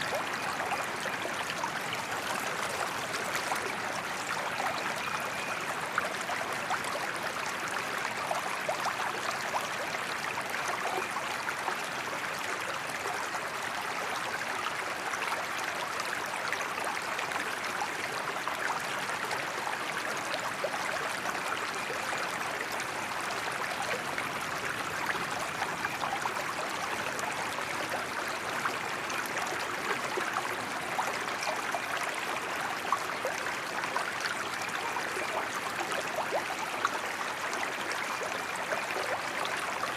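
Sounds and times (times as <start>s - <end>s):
small water splashes: 0.0s - 5.6s
creek babbling: 0.0s - 39.9s.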